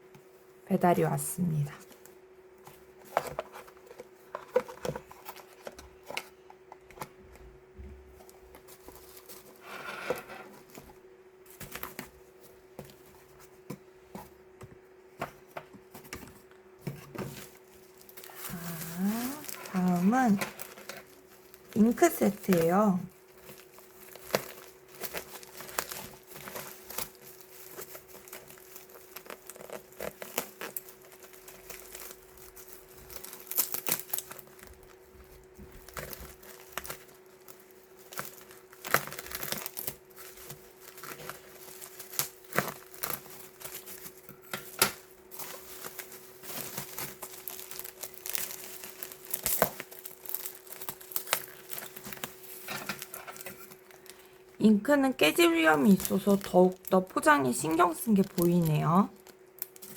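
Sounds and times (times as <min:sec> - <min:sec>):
faint steady hum: 0:00.0 - 0:59.9
packaging crinkling: 0:01.8 - 0:14.4, 0:15.3 - 0:59.9
packaging tearing: 0:17.2 - 0:35.1, 0:35.7 - 0:54.2, 0:55.6 - 0:59.9.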